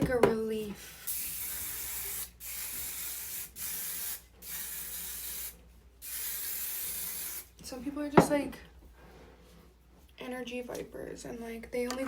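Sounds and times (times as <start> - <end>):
aerosol hairspray spraying: 1.0 - 7.5.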